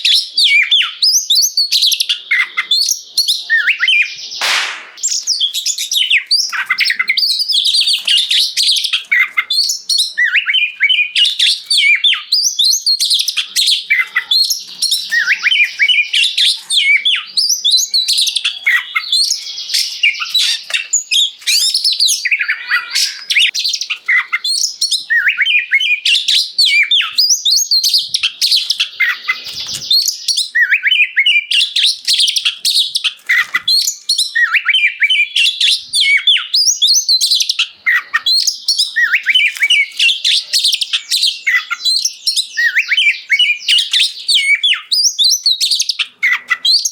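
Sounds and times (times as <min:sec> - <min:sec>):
bird singing whistles and trills: 0:00.0 - 0:46.9.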